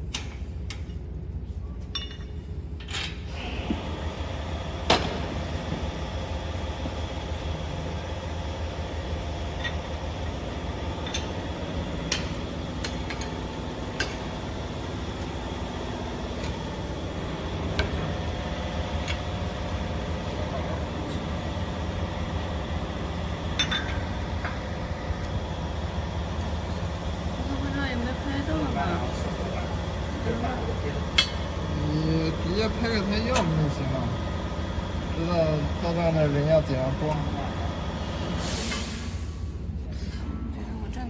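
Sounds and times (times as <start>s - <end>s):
low hum of workshop machinery: 0.0s - 41.0s
machine running noise: 2.5s - 41.0s
hand tools clinking on metal: 23.6s - 24.1s.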